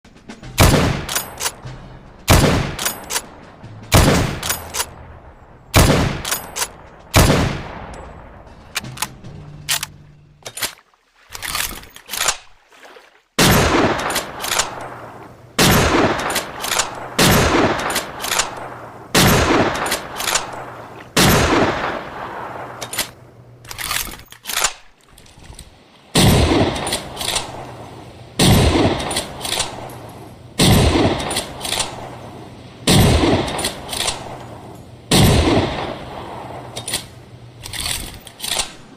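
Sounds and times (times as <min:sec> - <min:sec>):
rifle shots with echo: 0:00.6 - 0:01.6, 0:02.3 - 0:09.1, 0:13.4 - 0:23.2, 0:28.4 - 0:29.9, 0:30.6 - 0:32.2, 0:32.9 - 0:36.9.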